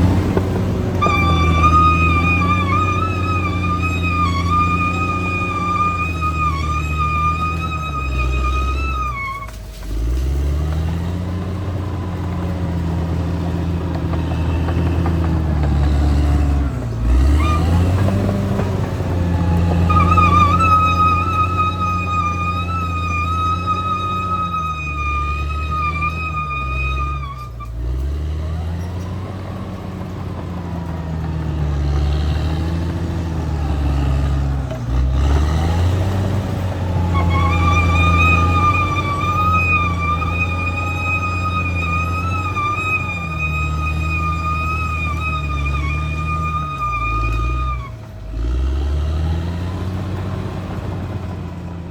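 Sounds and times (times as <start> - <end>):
bulldozer diesel engine running: 0.0 - 51.9.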